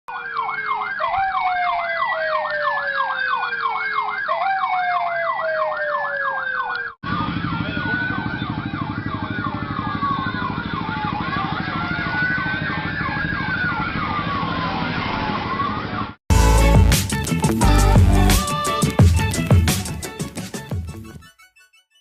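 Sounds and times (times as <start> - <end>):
siren falling tone: 0.1 - 15.9
electronic siren yelp: 0.1 - 16.2, 17.6 - 20.3
siren slow rising sweeps: 0.2 - 16.1.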